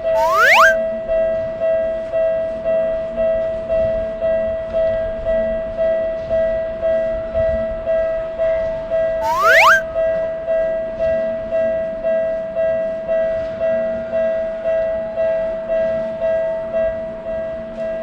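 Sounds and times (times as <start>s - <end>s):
short rising swoop: 0.1s - 0.8s, 9.2s - 9.8s.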